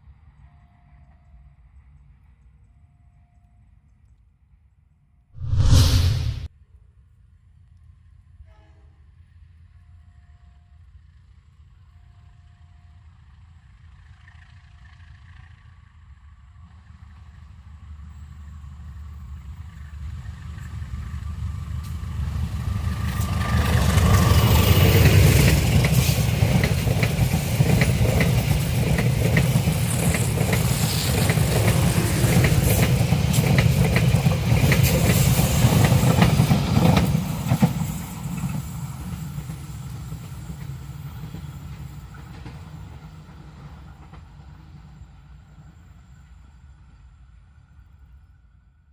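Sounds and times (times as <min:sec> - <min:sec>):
diesel locomotive engine under load: 0:20.4 - 0:44.1
train wheels clicking and knocking: 0:23.2 - 0:38.6.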